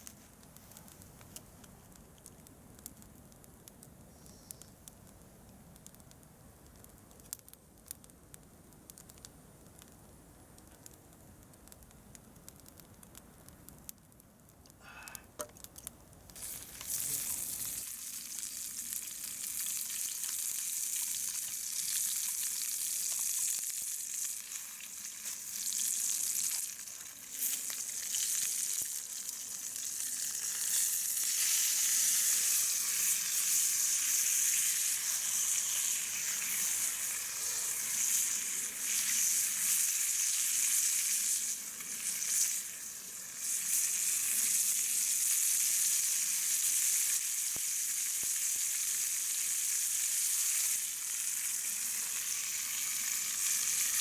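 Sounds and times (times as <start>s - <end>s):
food sizzling in a pan: 16.4s - 54.0s.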